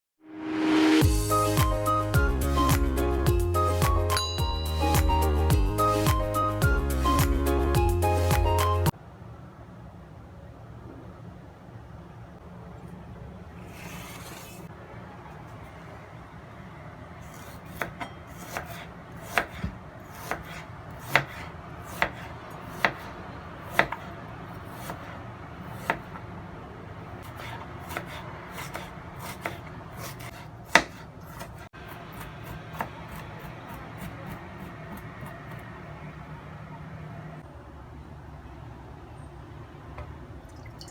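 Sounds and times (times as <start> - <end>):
knife chopping on cutting board: 17.2 - 26.2, 27.2 - 35.7.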